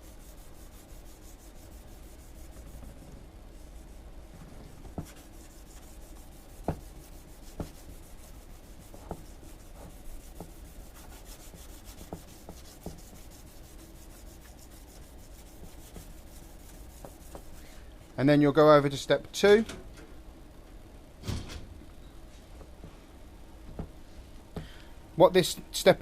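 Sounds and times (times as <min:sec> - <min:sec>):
wet sanding by hand: 0:00.0 - 0:02.7, 0:05.0 - 0:17.6.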